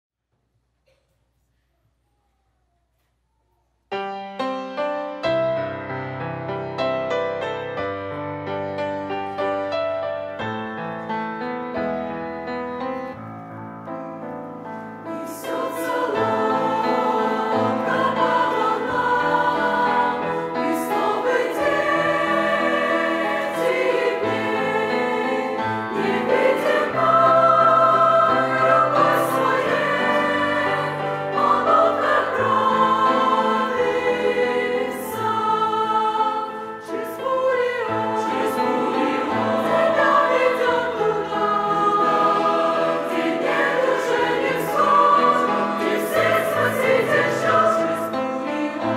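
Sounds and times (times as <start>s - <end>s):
church choir singing a hymn: 14.6s - 48.9s.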